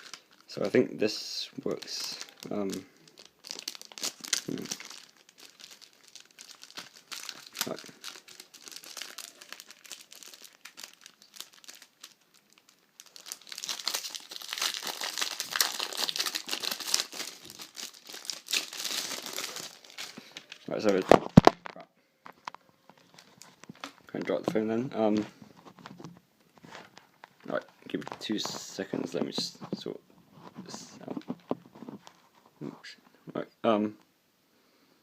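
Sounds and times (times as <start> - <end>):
packaging crinkling: 0.0 - 0.6, 1.6 - 24.6.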